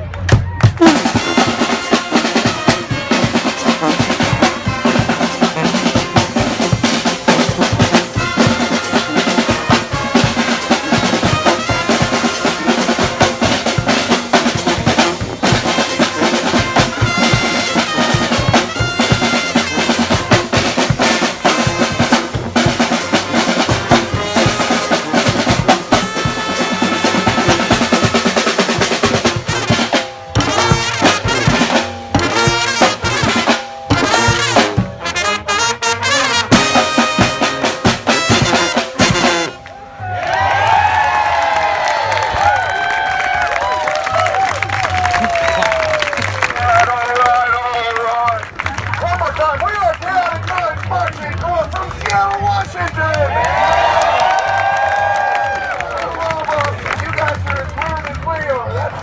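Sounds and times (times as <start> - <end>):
snare and bass drums: 0.0 - 39.6
brass band playing: 0.6 - 59.0.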